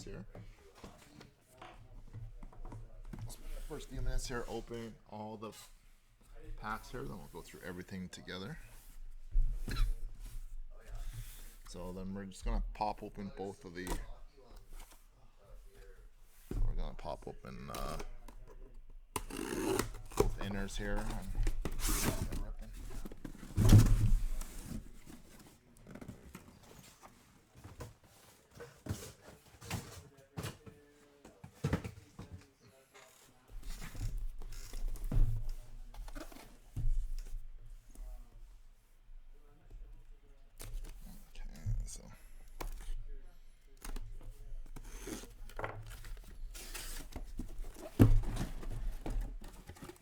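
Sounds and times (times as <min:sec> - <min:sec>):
cardboard boxes knocking on table: 0:44.8 - 0:50.0.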